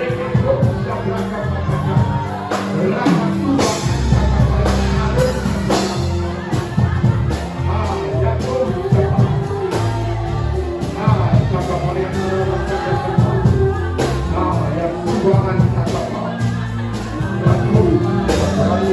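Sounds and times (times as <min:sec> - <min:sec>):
bass line: 0:00.0 - 0:18.9
congregation singing: 0:00.0 - 0:18.9
drum beats: 0:00.0 - 0:18.9
worship band playing: 0:00.0 - 0:18.9.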